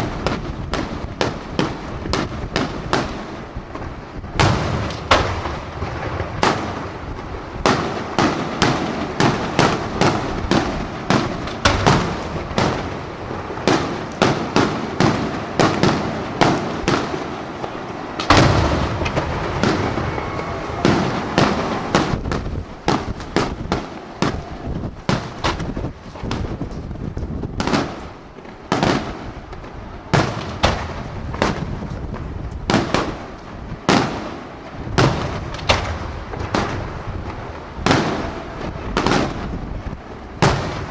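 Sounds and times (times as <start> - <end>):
fireworks crackling: 0.0 - 26.6
firework shell bursts: 15.6 - 22.4.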